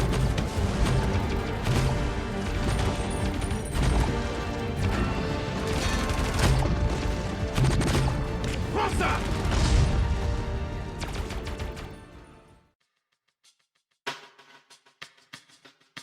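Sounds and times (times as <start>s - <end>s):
dramatic music with percussive hits: 0.0s - 12.6s.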